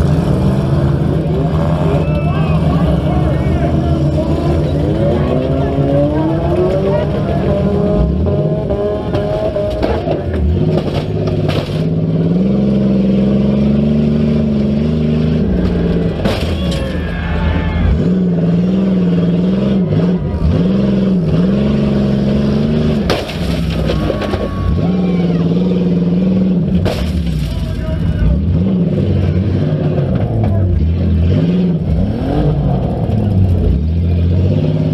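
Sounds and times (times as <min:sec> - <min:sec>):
car engine revving: 0:00.0 - 0:34.9
metal impact bangs: 0:15.6 - 0:17.4.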